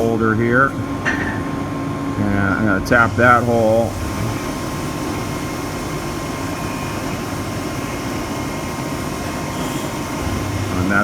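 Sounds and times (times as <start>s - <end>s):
milling machine running: 0.0s - 11.0s.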